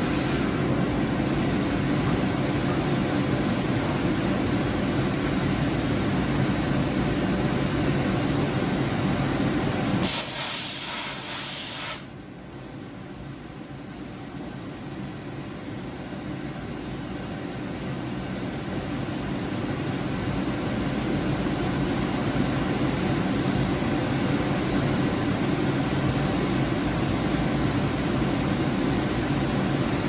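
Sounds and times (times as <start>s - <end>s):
machine tool running: 0.0s - 0.7s
sharp air hiss: 0.0s - 0.7s, 10.0s - 12.1s.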